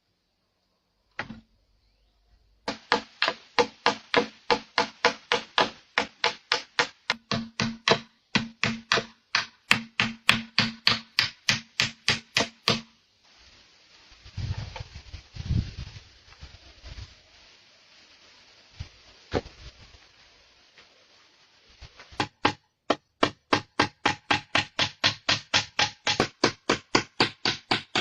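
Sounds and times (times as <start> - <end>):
hammer striking wood: 2.7 - 12.9, 22.2 - 28.0.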